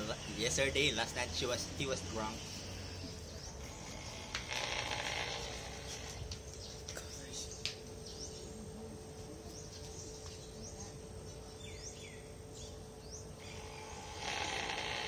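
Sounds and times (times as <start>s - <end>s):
small birds chirping: 0.0s - 8.8s, 9.4s - 15.0s
faint hum: 0.0s - 15.0s
loud rasping noise: 3.6s - 6.4s, 13.4s - 15.0s.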